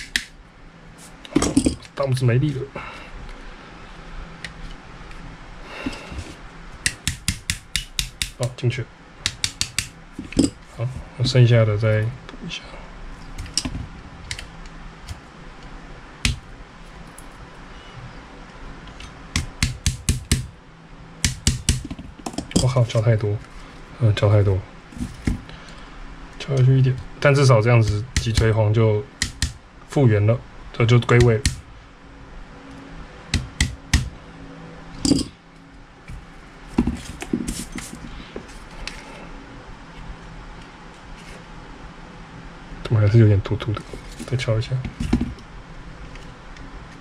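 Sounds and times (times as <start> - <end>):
hammer tapping a pin: 6.8 - 8.4, 9.2 - 10.6, 19.4 - 20.5, 21.2 - 22.7, 29.2 - 29.6, 33.3 - 34.1.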